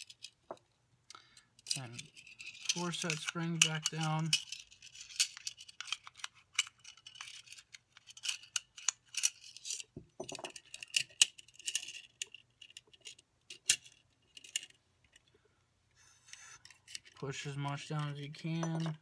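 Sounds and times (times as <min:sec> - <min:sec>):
pistol magazine clicking and rattling: 0:01.6 - 0:14.8.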